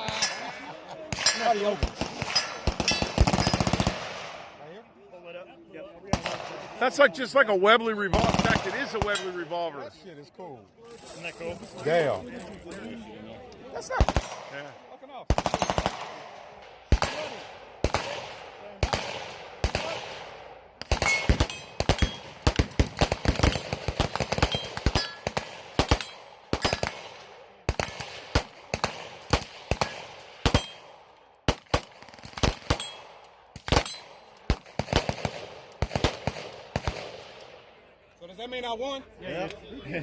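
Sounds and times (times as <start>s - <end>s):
gunshots with ringing echo: 15.3s - 37.3s.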